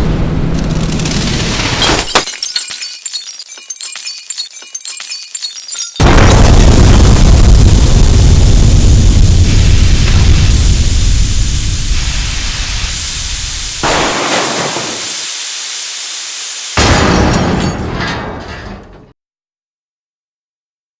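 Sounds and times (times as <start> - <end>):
explosion low rumble: 6.0 - 12.9.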